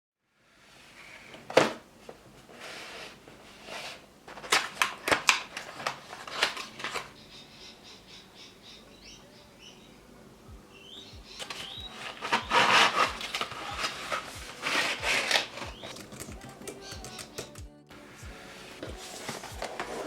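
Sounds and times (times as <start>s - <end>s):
faint crinkling: 0.6s - 20.0s
soft rustling: 11.1s - 16.7s, 18.0s - 20.0s
sharp clicks and taps: 15.1s - 17.8s.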